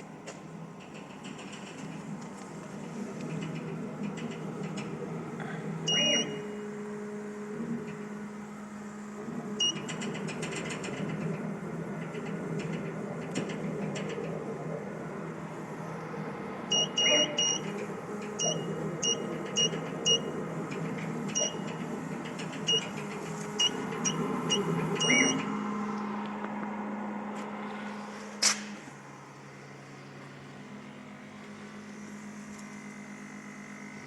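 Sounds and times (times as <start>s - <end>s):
laser cutter mechanical hum: 0.0s - 34.0s
short high-pitched beeps: 5.9s - 6.4s, 16.7s - 17.7s, 18.4s - 20.3s, 21.4s - 21.6s, 25.0s - 25.4s.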